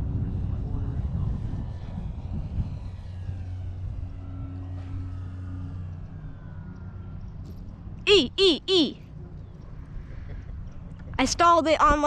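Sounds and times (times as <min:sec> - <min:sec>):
wind rumbling on microphone: 0:00.0 - 0:08.0
model plane motor whine: 0:01.2 - 0:07.4.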